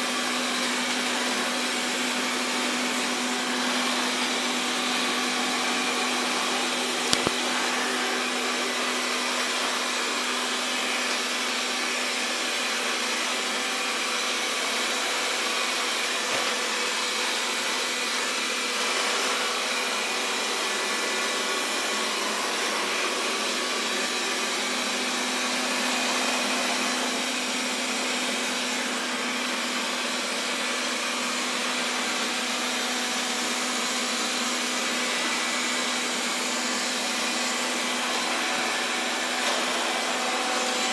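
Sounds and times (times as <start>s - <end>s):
robot vacuum whirring: 6.4s - 8.2s.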